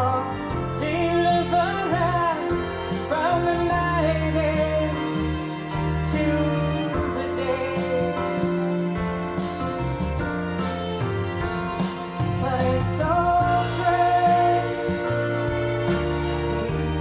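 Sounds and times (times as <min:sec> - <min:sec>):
woman singing: 0:00.0 - 0:08.7, 0:12.2 - 0:15.2, 0:16.1 - 0:17.0
instrumental accompaniment: 0:00.0 - 0:17.0
low bass line: 0:00.0 - 0:17.0.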